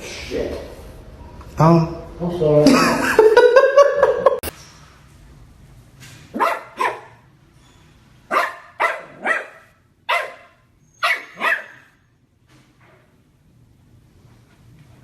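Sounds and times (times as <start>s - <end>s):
dog barking: 6.3s - 7.2s, 8.3s - 12.0s.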